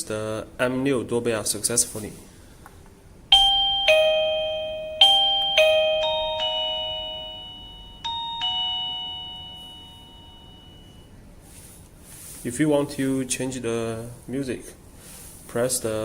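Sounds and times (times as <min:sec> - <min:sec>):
electronic doorbell chime: 0:03.3 - 0:11.2.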